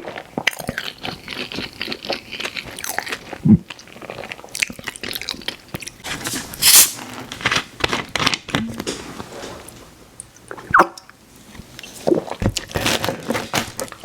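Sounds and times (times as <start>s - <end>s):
chewing and biting crust: 0.0s - 6.0s, 11.8s - 14.0s.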